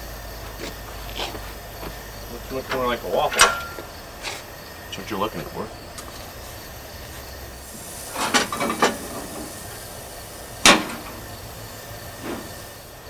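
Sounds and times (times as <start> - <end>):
steady background hiss: 0.0 - 13.0
sharp metallic clank: 3.2 - 4.0, 10.6 - 11.2.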